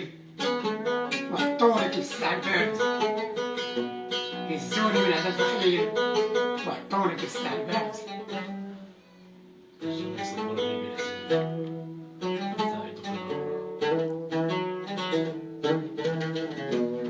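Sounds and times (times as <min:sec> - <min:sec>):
plucked string instrument: 0:00.0 - 0:17.0.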